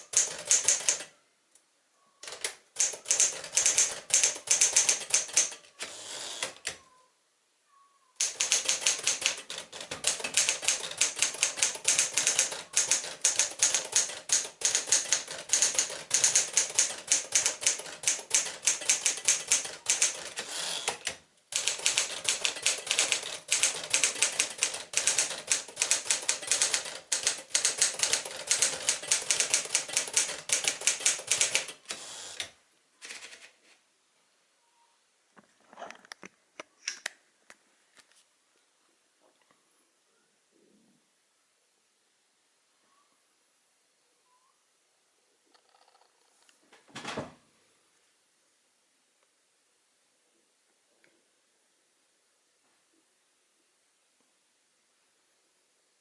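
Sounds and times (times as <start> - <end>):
manual typewriter typing: 0.0 - 1.1, 2.2 - 6.8, 8.2 - 33.5.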